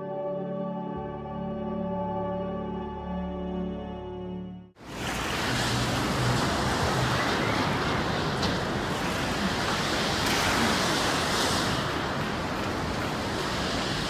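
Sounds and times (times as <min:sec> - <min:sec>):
steady rushing noise: 0:04.8 - 0:14.0.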